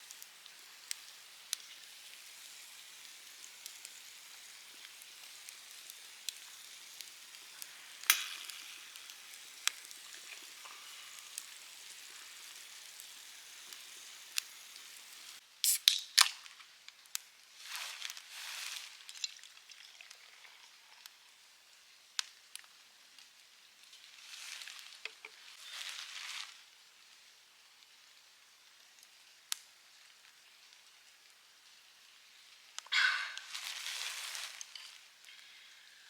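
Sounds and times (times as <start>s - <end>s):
fire pops and snaps: 0.0s - 17.3s, 22.2s - 25.6s, 28.9s - 30.9s
campfire crackling: 0.0s - 36.0s.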